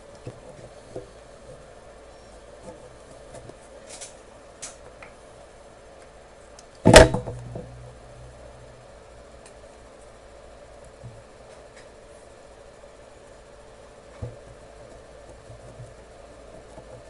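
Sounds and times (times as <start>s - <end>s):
loud knock: 6.9s - 8.3s
short low hum: 6.9s - 11.6s
faint scratches and clicks: 14.1s - 17.0s.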